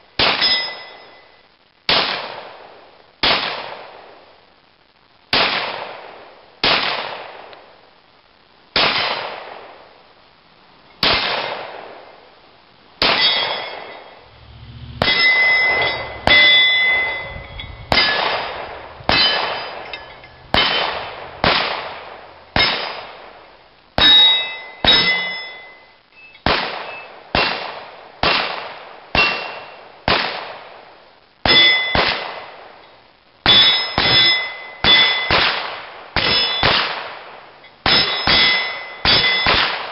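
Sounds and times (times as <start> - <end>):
pistol shots: 1.9 - 4.1, 5.3 - 7.5, 8.8 - 9.8, 11.0 - 12.1, 17.9 - 25.2, 26.4 - 30.8, 34.0 - 37.2, 37.8 - 39.9
steel target clanging: 13.0 - 25.9, 33.5 - 35.4, 36.2 - 36.8, 37.8 - 39.7.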